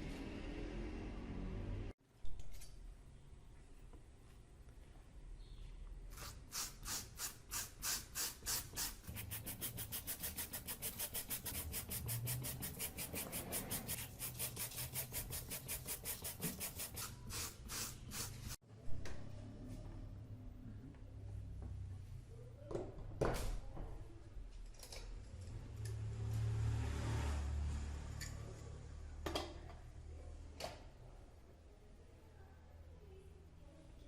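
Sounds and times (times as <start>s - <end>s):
abrasive rubbing strokes: 9.0s - 17.2s.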